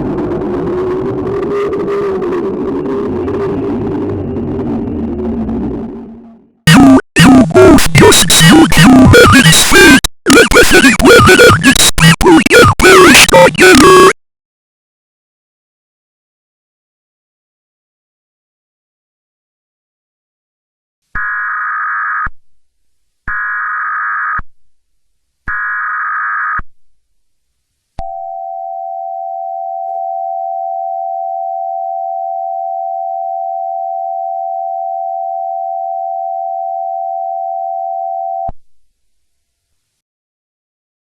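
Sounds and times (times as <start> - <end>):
bursts of data tones: 0.0 - 14.2, 21.2 - 22.3, 23.3 - 24.4, 25.5 - 26.6
long steady attention tone: 28.0 - 38.6.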